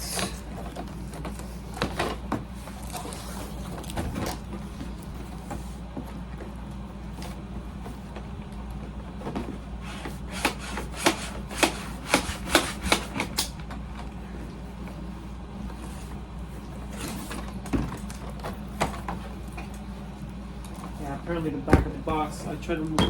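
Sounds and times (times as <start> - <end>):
air conditioner humming: 0.0 - 23.0.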